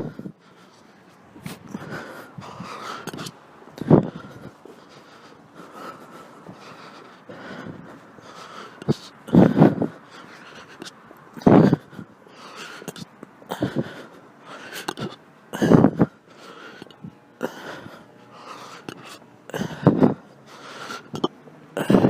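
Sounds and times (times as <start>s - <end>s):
woman hiccupping: 21.1s - 22.0s.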